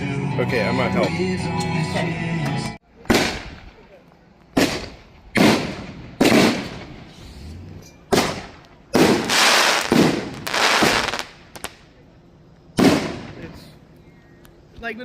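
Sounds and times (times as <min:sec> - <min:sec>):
firework bangs: 0:03.1 - 0:03.9, 0:04.5 - 0:07.2, 0:08.1 - 0:11.9, 0:12.8 - 0:13.7.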